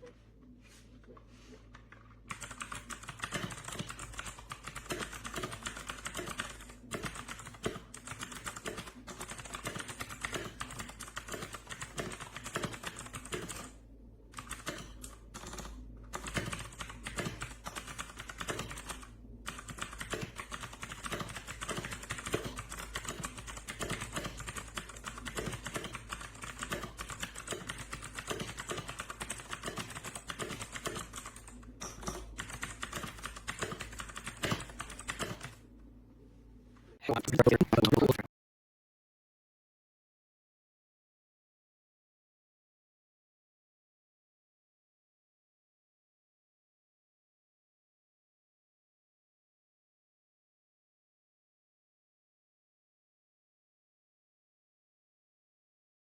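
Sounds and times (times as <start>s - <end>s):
mechanical keyboard typing: 1.9s - 13.7s, 14.4s - 35.6s.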